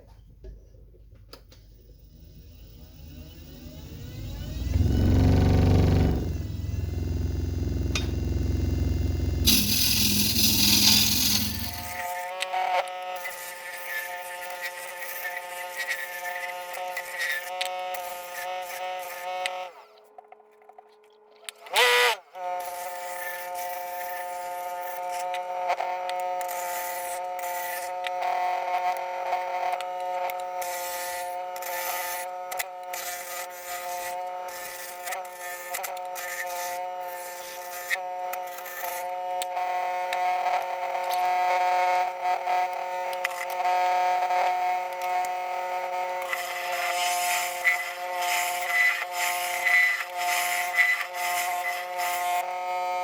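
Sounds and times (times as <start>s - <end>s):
loud rising whine: 1.8s - 12.0s
wood lathe motor hum: 2.2s - 12.0s
turning tool scraping wood: 4.6s - 12.0s.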